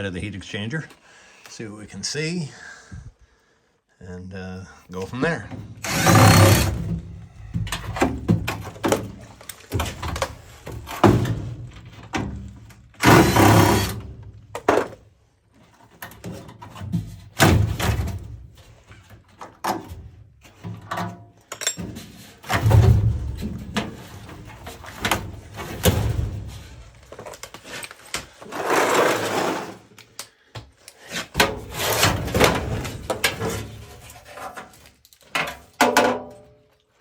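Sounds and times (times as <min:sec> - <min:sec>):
metal clanks and scrapes: 0:05.5 - 0:12.0, 0:18.9 - 0:30.0, 0:31.0 - 0:36.5.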